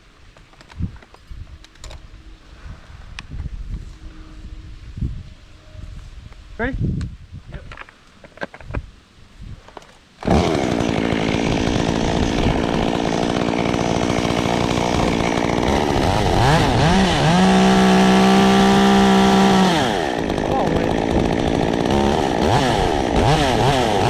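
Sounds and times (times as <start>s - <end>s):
chainsaw running at high revs: 10.2s - 24.0s.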